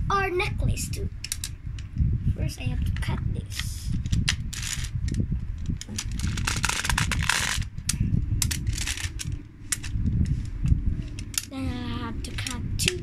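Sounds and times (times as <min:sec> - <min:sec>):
low rumble: 0:00.0 - 0:13.0
magnetic metal balls clicking: 0:01.2 - 0:02.1, 0:03.6 - 0:13.0.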